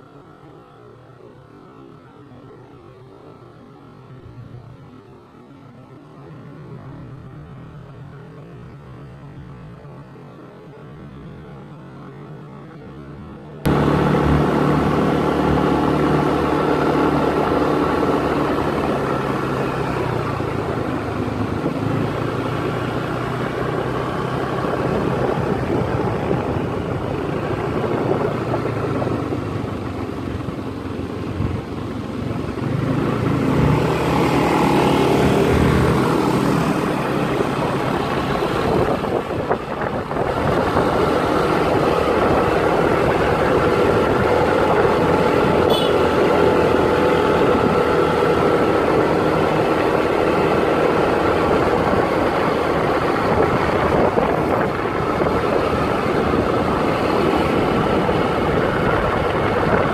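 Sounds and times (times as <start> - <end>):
road noise: 0.0 - 59.9
vehicle engine running: 13.6 - 59.9.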